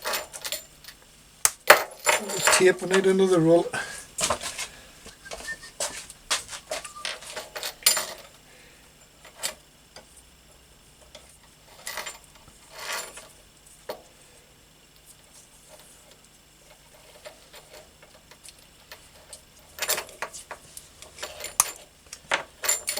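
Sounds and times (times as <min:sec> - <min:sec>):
short rustles: 0:03.7 - 0:07.7.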